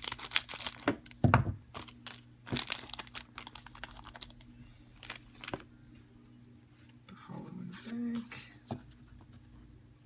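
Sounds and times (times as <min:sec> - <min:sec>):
wrapper tearing and crinkling: 0:00.0 - 0:05.6.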